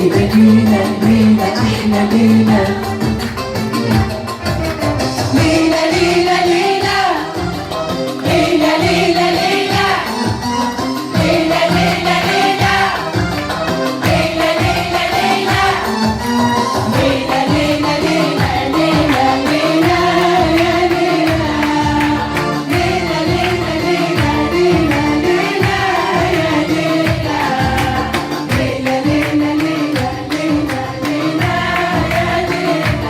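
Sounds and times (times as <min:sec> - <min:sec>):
women singing in unison: 0:00.0 - 0:04.0, 0:05.0 - 0:33.0
steady drum beat: 0:00.0 - 0:33.0.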